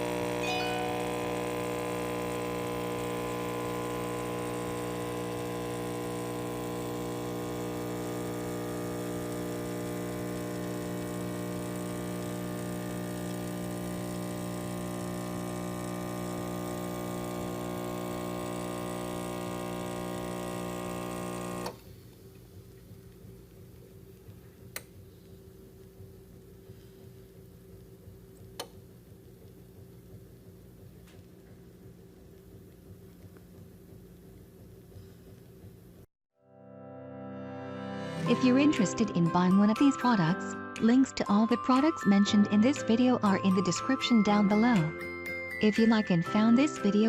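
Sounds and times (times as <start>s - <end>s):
espresso machine pump humming: 0.0s - 21.9s.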